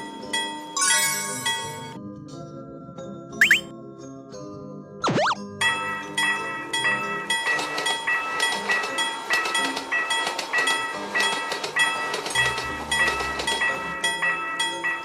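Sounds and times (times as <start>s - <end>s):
train clickety-clack on rails: 6.2s - 15.0s.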